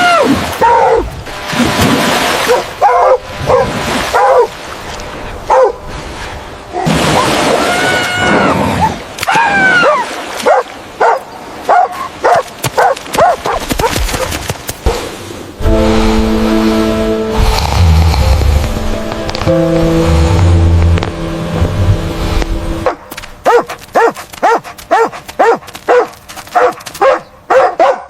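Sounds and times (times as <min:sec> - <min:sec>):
dog barking and whining: 0:00.6 - 0:01.1, 0:02.5 - 0:04.5, 0:09.8 - 0:14.0, 0:22.8 - 0:28.0.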